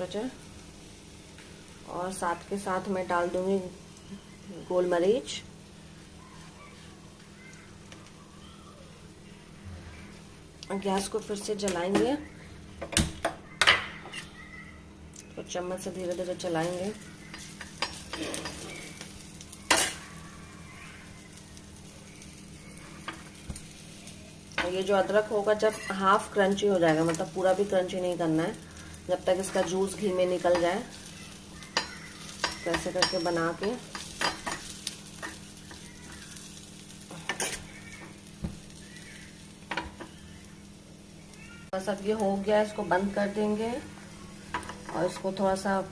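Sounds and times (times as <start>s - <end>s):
spices sizzling in hot fat: 0.0s - 45.9s
spoon scraping and tapping a pan: 16.7s - 19.0s, 31.6s - 36.2s, 37.3s - 37.7s, 44.5s - 45.3s.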